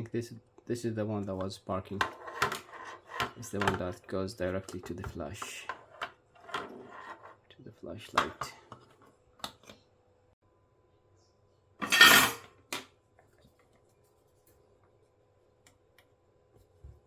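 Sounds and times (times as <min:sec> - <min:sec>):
objects clattering on a workbench: 0:04.7 - 0:07.4, 0:11.8 - 0:13.6.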